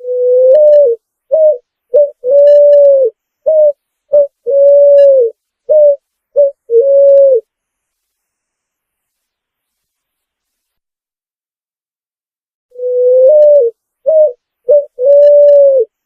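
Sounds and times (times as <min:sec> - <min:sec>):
pigeon cooing: 0:00.0 - 0:07.5, 0:12.8 - 0:16.0.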